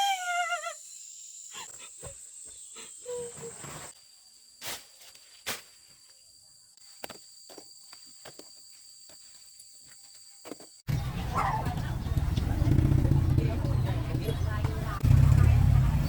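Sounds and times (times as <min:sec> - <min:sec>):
insects trilling: 0:00.0 - 0:10.8.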